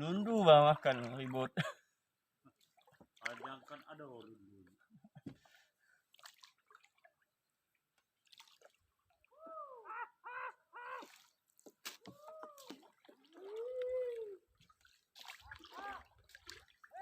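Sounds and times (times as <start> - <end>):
soft drips and clicks: 6.1 - 9.3.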